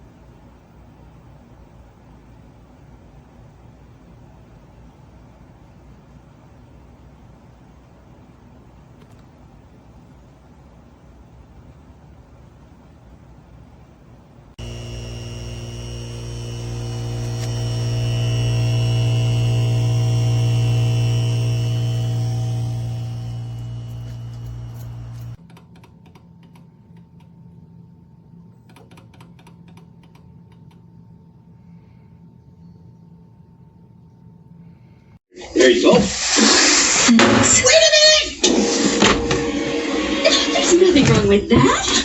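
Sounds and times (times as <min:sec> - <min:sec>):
low electrical hum: 0:00.0 - 0:25.4.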